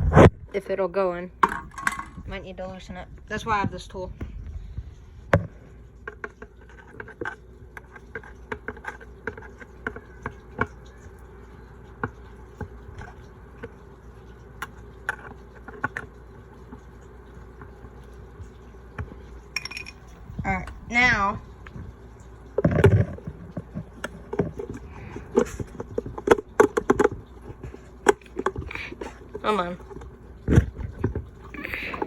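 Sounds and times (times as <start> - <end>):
steady low hum: 0.0 - 32.0
plastic clicks taps and scrapes: 22.6 - 31.3.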